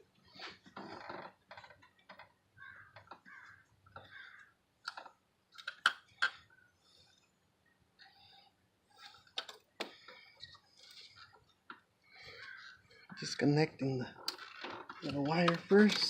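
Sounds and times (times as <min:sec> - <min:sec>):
clicks and scrapes of hands on parts: 0:04.8 - 0:06.4.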